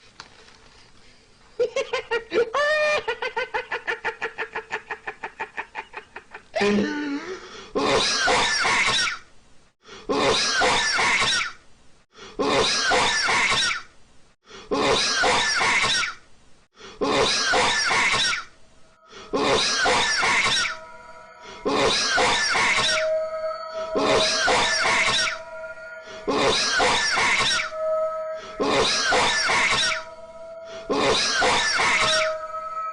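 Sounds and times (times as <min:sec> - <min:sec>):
held musical notes: 0:18.8 - 0:32.9.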